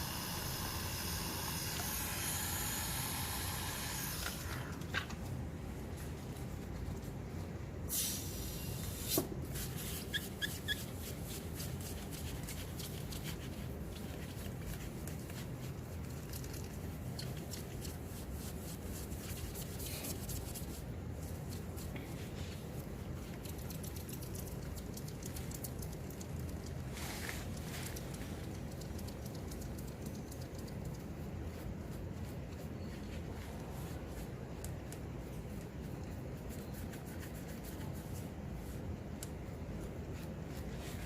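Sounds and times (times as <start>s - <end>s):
steady low hum: 0.0s - 41.0s
brief hiss: 7.9s - 9.3s
short high squeaks: 9.8s - 10.9s.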